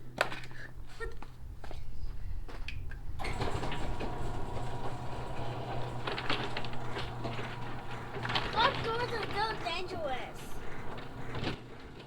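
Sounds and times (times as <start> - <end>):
garage door opener droning: 3.2 - 12.0.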